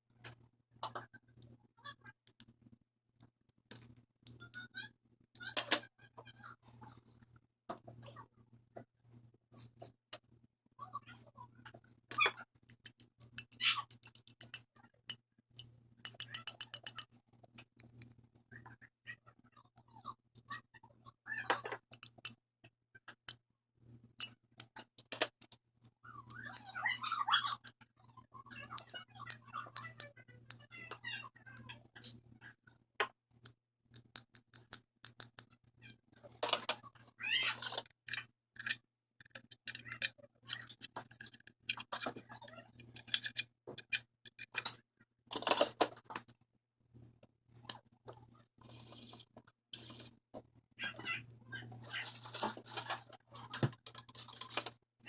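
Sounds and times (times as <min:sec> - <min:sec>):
clicks taps and rubbing of hands: 0:16.0 - 0:18.2, 0:33.0 - 0:36.5.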